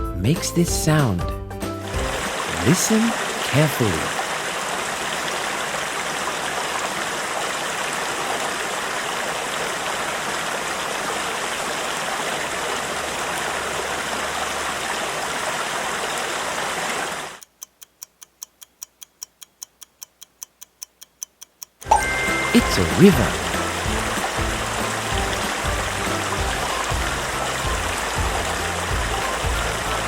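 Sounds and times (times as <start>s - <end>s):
countdown timer ticking: 0.0s - 4.1s, 17.4s - 30.0s
river water rushing: 1.8s - 17.4s, 21.9s - 30.0s.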